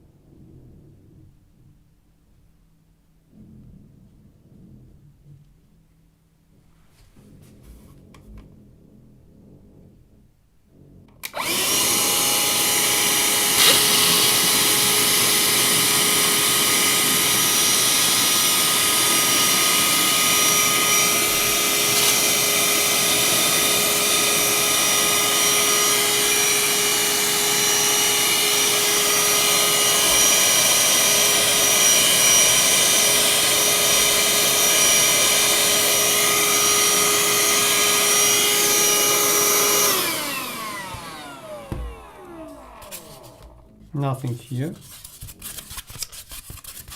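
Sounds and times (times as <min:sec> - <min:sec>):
handheld vacuum cleaner whine: 0:11.2 - 0:43.8.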